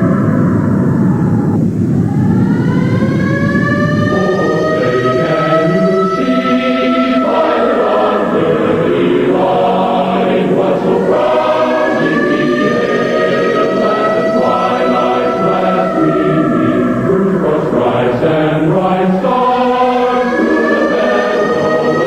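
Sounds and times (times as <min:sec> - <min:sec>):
choir singing sustained notes: 0:00.0 - 0:22.0
long wailing tone: 0:00.0 - 0:22.0.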